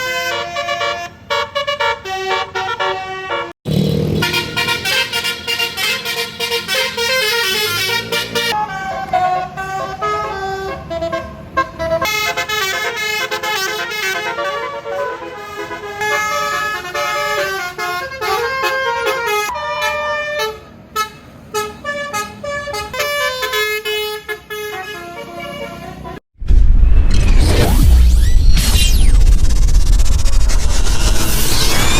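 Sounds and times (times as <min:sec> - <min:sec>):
multi-tone musical horn melody: 0:00.0 - 0:03.6, 0:04.2 - 0:26.2.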